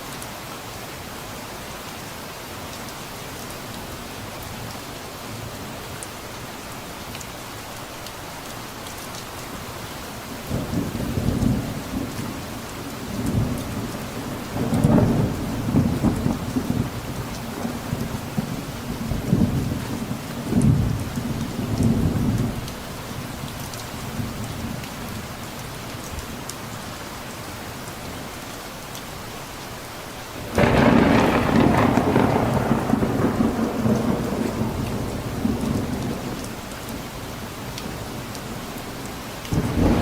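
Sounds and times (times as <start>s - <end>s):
steady rainfall: 0.0s - 40.0s
thunder rumbling: 13.0s - 22.6s, 30.5s - 37.0s, 39.5s - 40.0s.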